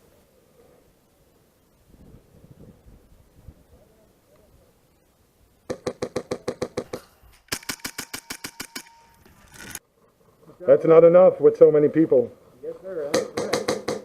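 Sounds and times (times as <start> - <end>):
airsoft rifle full-auto bursts: 7.5 - 9.8.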